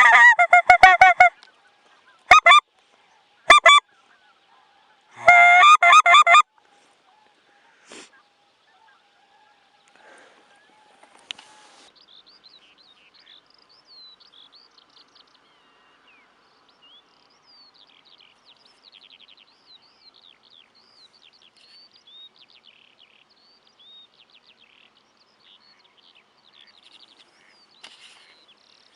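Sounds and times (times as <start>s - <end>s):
faint steady hiss: 6.5s - 28.9s
songbirds singing: 6.5s - 28.9s.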